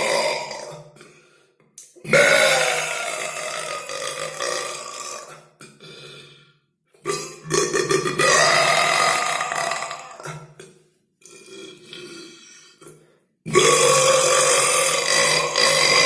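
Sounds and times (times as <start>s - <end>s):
person burping: 0.0s - 1.3s, 2.0s - 6.3s, 7.0s - 16.0s.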